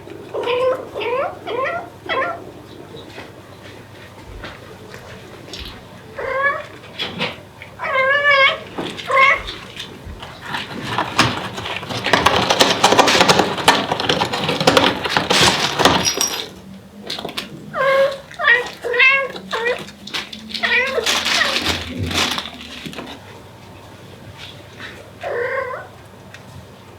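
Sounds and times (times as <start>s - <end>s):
cat meowing: 0.4s - 2.5s, 6.2s - 6.7s, 7.8s - 9.6s, 17.7s - 19.9s, 20.5s - 21.8s, 25.2s - 25.9s.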